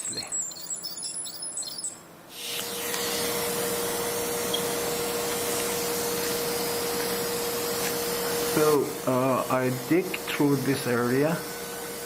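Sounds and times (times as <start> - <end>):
dental ultrasonic unit hissing: 0.0 - 12.0.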